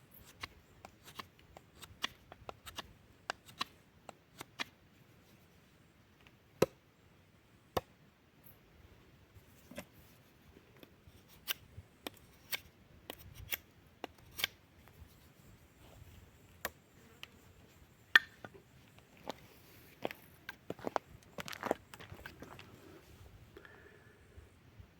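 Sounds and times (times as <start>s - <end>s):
knife clicking and snapping wood: 0.2s - 3.7s, 12.4s - 14.6s.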